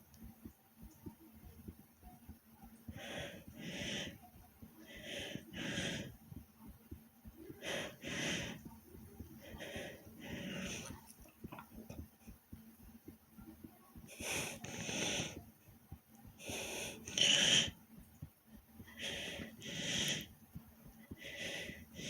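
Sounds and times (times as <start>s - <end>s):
person breathing heavily: 2.9s - 4.2s, 4.9s - 6.1s, 7.6s - 8.7s, 9.4s - 11.1s, 14.1s - 15.4s, 16.4s - 17.7s, 18.9s - 20.3s, 21.1s - 22.0s.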